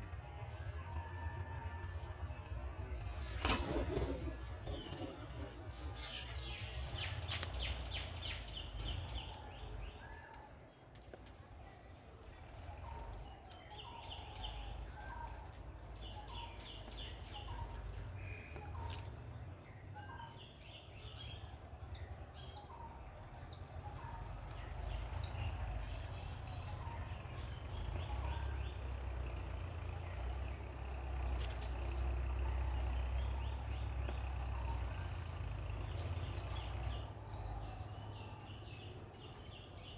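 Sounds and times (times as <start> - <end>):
high insect drone: 0.0 - 39.9
birds chirping and trilling: 3.7 - 10.2.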